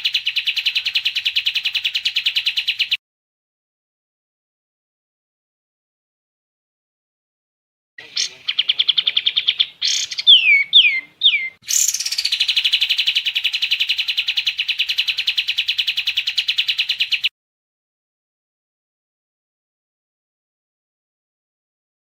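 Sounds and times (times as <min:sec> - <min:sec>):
songbird trilling and whistling: 0:00.0 - 0:03.0, 0:08.0 - 0:17.3.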